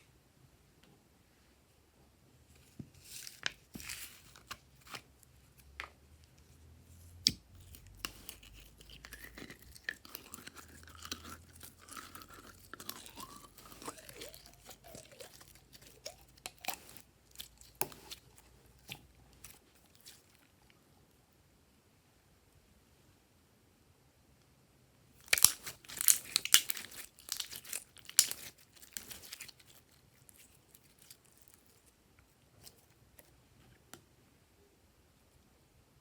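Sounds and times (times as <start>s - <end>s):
slime squeaking: 7.5s - 20.3s, 25.2s - 31.9s
slime clicking and popping: 25.2s - 29.8s.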